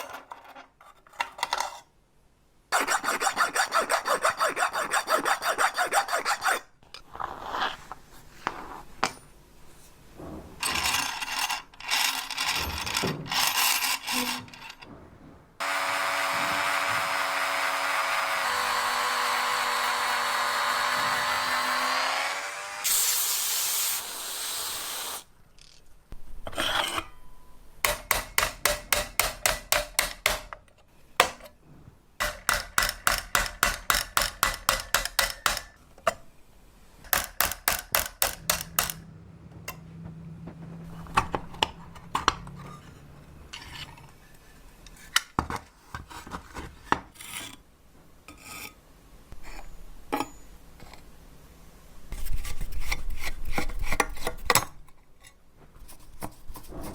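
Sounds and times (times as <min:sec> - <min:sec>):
rapid filing strokes: 0:02.7 - 0:06.7, 0:15.6 - 0:25.2.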